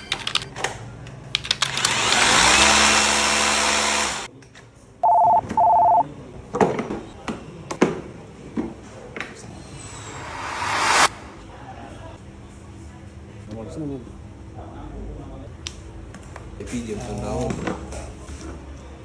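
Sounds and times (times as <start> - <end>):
cordless drill motor spinning: 1.7 - 4.2
short electronic beeps: 5.0 - 6.0.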